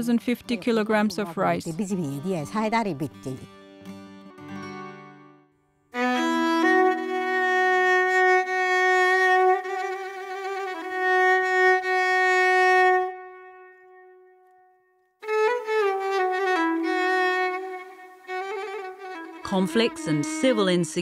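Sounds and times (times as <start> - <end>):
bowed violin sustained notes: 6.0 - 14.6, 15.2 - 21.0.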